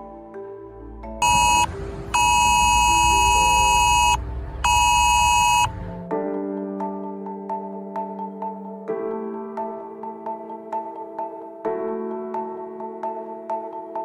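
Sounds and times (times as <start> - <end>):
soft background music: 0.0 - 14.0
phone emergency alert tone: 1.2 - 5.9.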